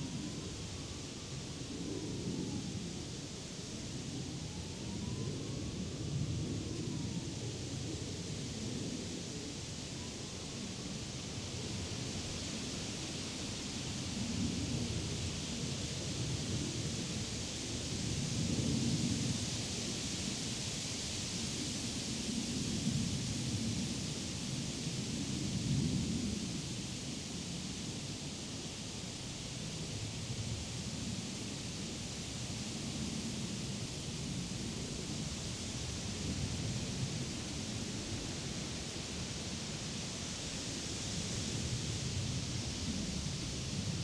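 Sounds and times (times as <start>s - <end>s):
wind rustling leaves and grass: 0.0s - 44.0s.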